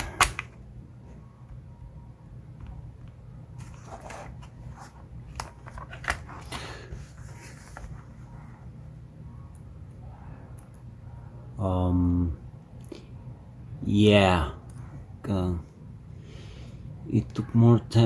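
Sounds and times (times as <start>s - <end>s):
lock pick scraping: 0.0s - 0.6s.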